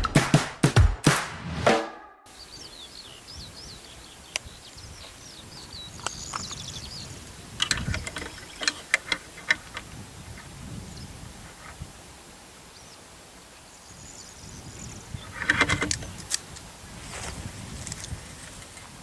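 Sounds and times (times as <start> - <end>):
birds chirping: 2.3 - 19.0
sharp clicks and knocks: 7.6 - 9.9, 15.4 - 16.7.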